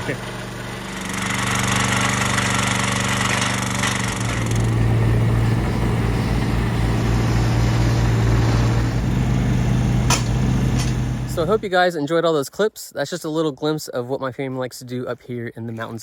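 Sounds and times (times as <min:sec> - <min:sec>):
small gasoline engine running: 0:00.0 - 0:11.7.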